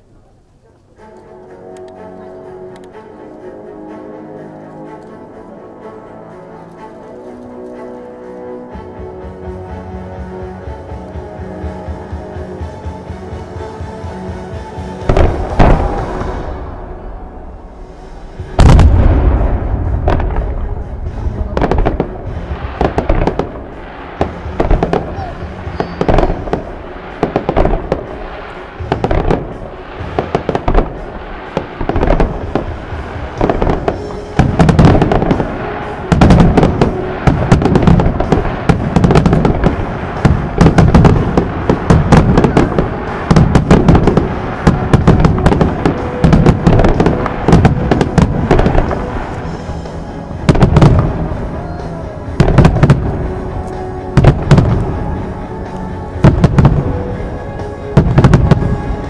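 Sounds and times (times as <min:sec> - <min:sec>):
fireworks booming and crackling: 0:14.8 - 0:59.0.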